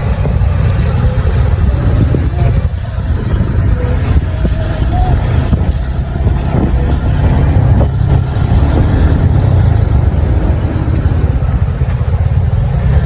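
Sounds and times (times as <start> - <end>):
motorcycle engine rumbling: 0.0 - 13.0.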